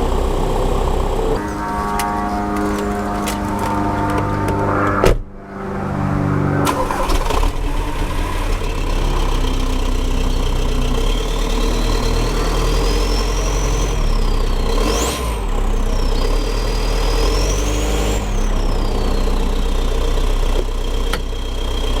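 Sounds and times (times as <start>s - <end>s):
diesel engine drone: 0.0s - 22.0s
thin high whine: 1.4s - 5.0s.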